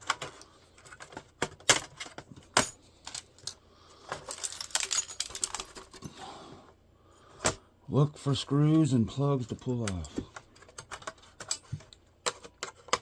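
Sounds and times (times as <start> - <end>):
plastic and metal parts clicking: 9.8 - 13.0.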